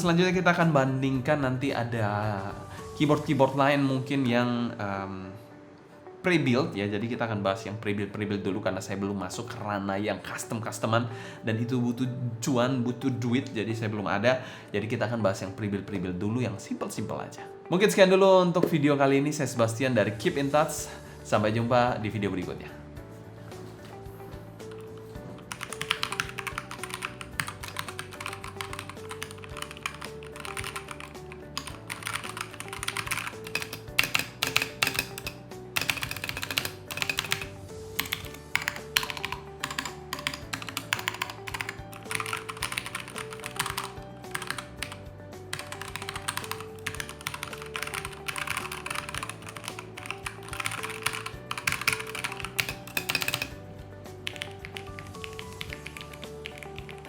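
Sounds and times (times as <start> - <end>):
background music: 0.0 - 57.0
fast mechanical keyboard typing: 24.7 - 53.6, 54.2 - 57.0.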